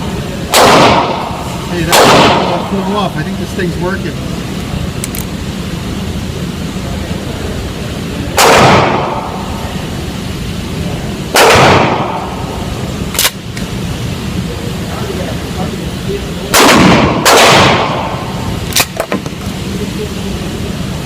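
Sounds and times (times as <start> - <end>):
shotgun shots: 0.5 - 2.7, 8.4 - 9.3, 11.3 - 12.3, 16.5 - 18.2.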